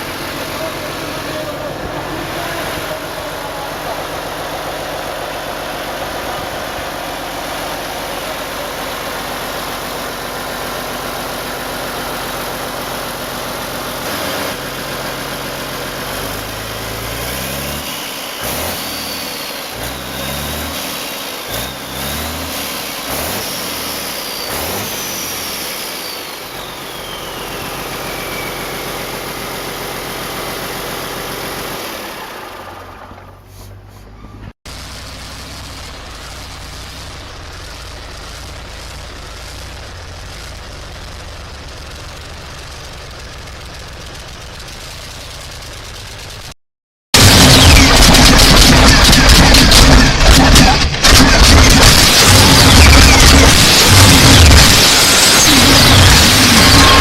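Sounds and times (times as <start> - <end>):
old engine idling and revving: 0.0 - 57.0
high whine: 47.2 - 57.0.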